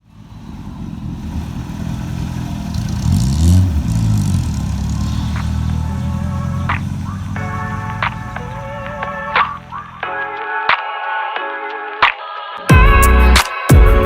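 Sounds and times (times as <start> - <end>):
car engine revving: 0.0 - 10.4.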